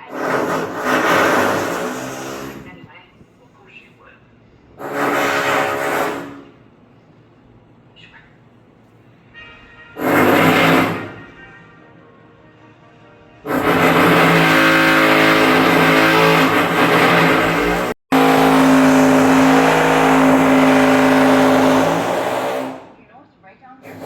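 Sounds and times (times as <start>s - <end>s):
muffled jackhammer through ceiling: 0.0s - 2.9s, 4.6s - 6.6s, 10.0s - 11.3s, 13.5s - 23.0s.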